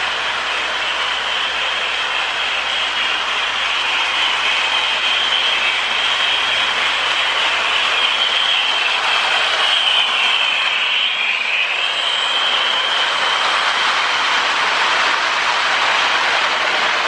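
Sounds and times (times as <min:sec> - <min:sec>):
high whine: 0:00.0 - 0:17.0
toy train rolling on rails: 0:00.0 - 0:17.0.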